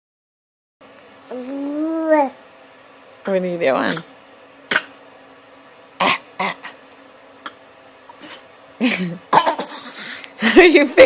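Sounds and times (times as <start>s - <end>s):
baby fake coughing: 4.7s - 5.0s, 6.0s - 6.6s, 9.3s - 10.0s.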